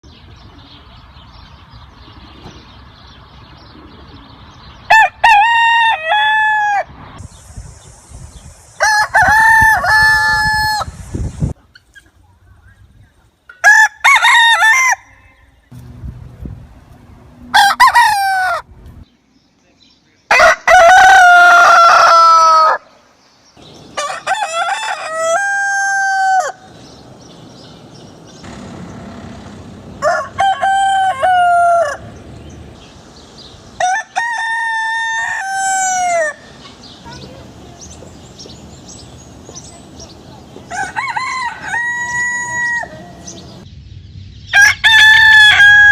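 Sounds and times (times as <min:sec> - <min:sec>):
roosters crowing: 0:04.9 - 0:07.0, 0:08.8 - 0:11.0, 0:13.5 - 0:15.6, 0:17.3 - 0:18.8, 0:20.3 - 0:23.0, 0:23.6 - 0:43.6, 0:44.5 - 0:45.9.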